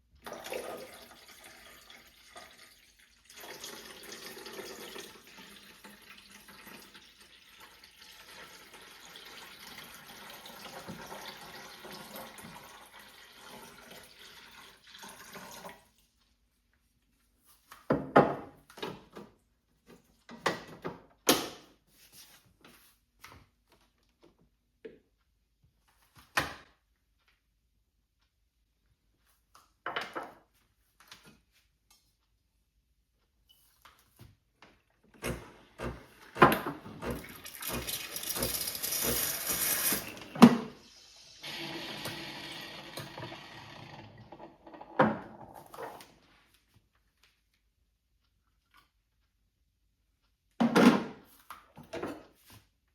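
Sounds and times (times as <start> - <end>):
espresso machine hissing: 37.7 - 44.1.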